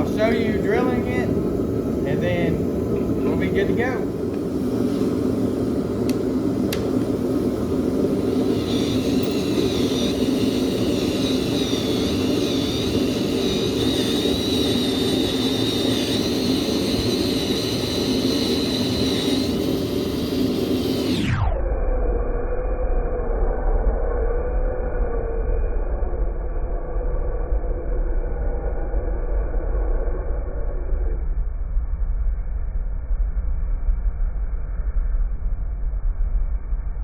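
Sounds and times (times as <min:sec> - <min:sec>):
low rumble: 0:00.0 - 0:37.0
electric drill whining: 0:08.1 - 0:21.3.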